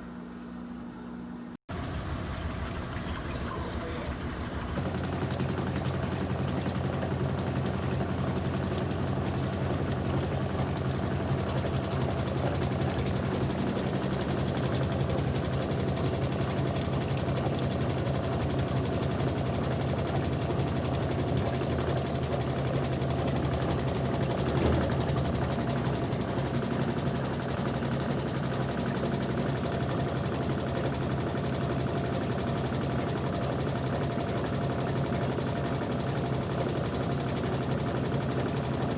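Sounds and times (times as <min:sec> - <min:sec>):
washing machine motor hum: 0:00.0 - 0:38.9
washing machine knock: 0:21.6 - 0:27.5.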